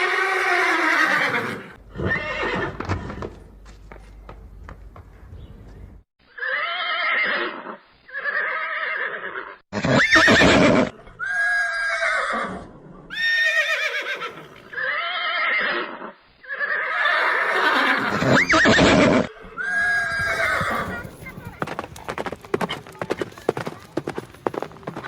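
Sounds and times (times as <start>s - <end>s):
horse whinnying: 0.0s - 3.2s, 6.4s - 21.1s.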